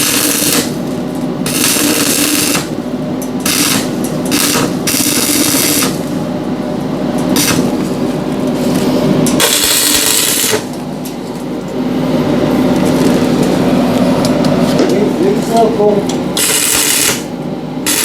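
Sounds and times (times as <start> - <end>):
welding hiss bursts: 0.0 - 0.8, 1.5 - 2.7, 3.4 - 6.0, 7.4 - 7.7, 9.4 - 10.7, 16.4 - 18.0
machine hum: 0.0 - 18.0.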